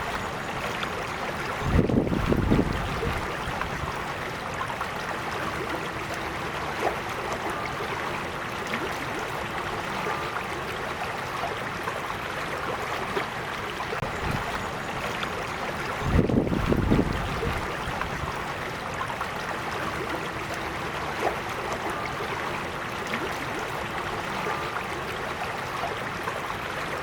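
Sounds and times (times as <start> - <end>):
creek water flowing: 0.0 - 27.0
wind buffeting microphone: 1.5 - 4.1, 15.9 - 18.5.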